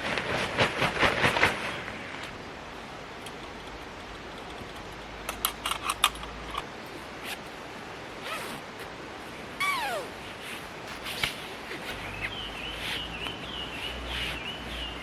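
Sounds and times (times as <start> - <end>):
steady background hiss: 0.0 - 15.0
call falling in pitch: 9.6 - 10.1.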